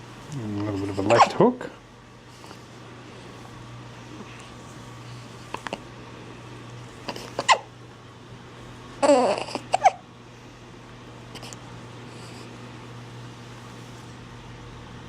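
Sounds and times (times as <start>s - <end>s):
baby babbling and squeaking: 1.0s - 1.4s, 7.1s - 7.7s, 9.0s - 10.0s.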